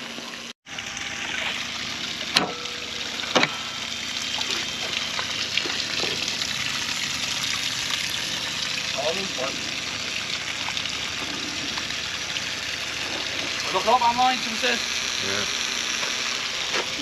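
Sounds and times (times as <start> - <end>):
water sloshing and splashing: 1.0 - 13.8.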